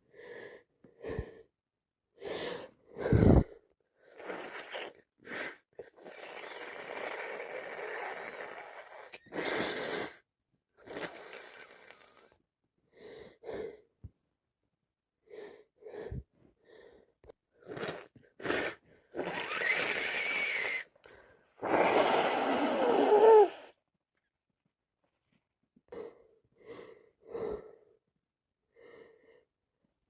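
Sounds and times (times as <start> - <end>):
wheezy gasping breaths: 2.2 - 13.9, 15.2 - 23.8, 25.9 - 28.0
woman sniffing: 21.6 - 23.8.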